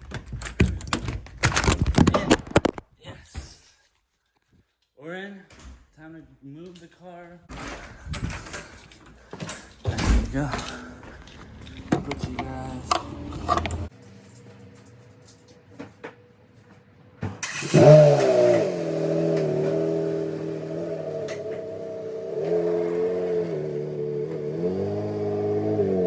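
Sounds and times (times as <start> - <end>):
engine cranking: 9.6 - 13.9, 17.4 - 26.0
car engine revving and idling: 11.4 - 13.9, 17.4 - 26.0.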